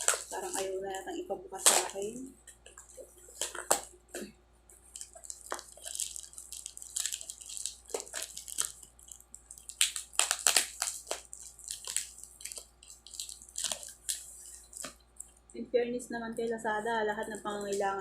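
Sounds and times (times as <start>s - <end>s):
packaging crinkling and tearing: 0.0s - 15.5s.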